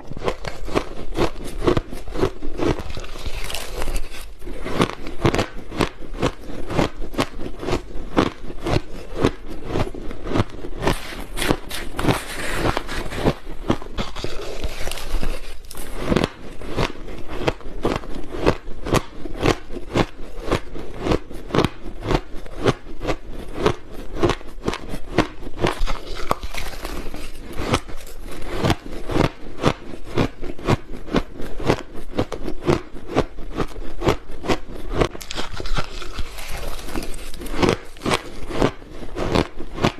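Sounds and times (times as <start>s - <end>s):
crunching ice: 0.0s - 39.9s.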